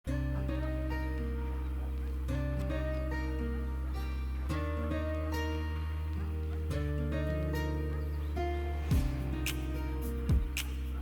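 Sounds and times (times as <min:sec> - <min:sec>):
plucked-string music with low notes: 0:00.1 - 0:11.0.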